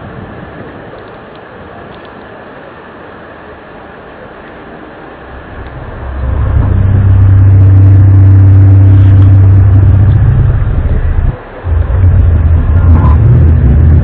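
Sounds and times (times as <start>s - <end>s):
low droning hum: 3.1s - 14.0s.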